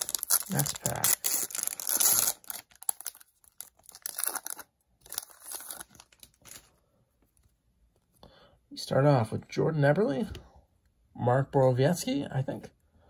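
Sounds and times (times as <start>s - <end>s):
card pack wrapper tearing and crinkling: 0.0s - 6.7s.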